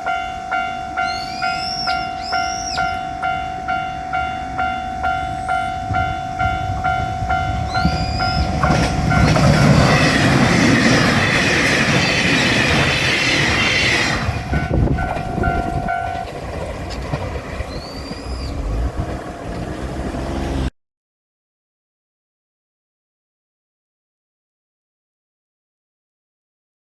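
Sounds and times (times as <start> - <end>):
level-crossing bell ringing: 0.0 - 10.1, 14.4 - 16.8
diesel train passing: 0.0 - 20.7.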